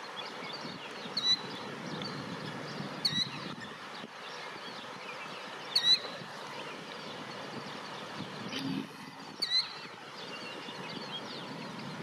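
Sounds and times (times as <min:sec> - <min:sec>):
small birds chirping: 0:00.0 - 0:12.0
shrill bird call: 0:09.4 - 0:09.9.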